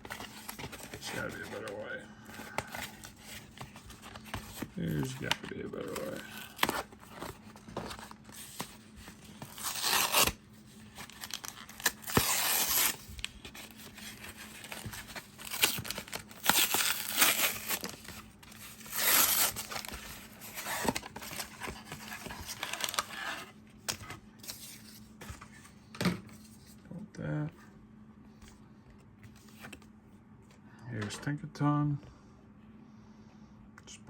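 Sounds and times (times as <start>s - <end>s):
packaging tearing and crinkling: 2.4s - 23.4s.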